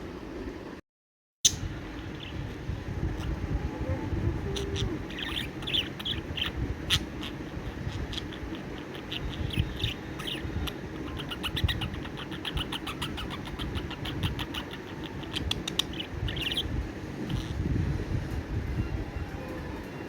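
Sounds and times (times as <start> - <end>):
low background rumble: 1.5 - 20.0
budgerigar chirping: 2.0 - 2.5, 4.6 - 17.6.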